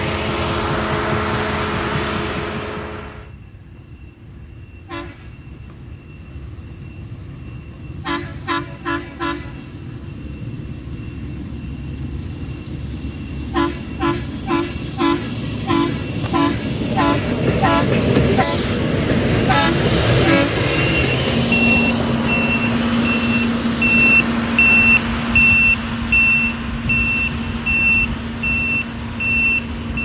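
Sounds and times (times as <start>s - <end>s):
loud machinery noise: 0.0s - 3.2s, 13.6s - 30.0s
air horn toots: 0.0s - 3.3s, 13.6s - 18.6s, 19.5s - 20.6s.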